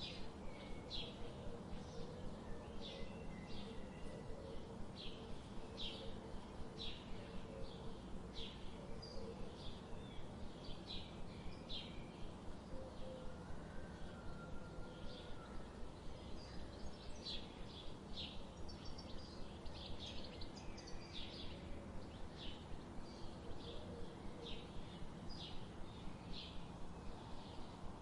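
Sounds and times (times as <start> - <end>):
steady background hiss: 0.0 - 28.0.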